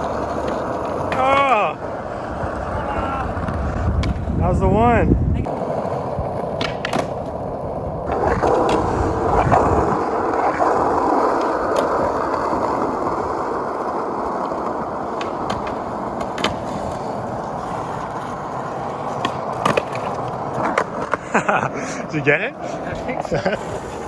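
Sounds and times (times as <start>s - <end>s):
skateboard clicks: 0.0s - 1.6s, 2.3s - 4.3s, 5.4s - 21.5s
skateboard wheels rolling on pavement: 0.0s - 24.0s.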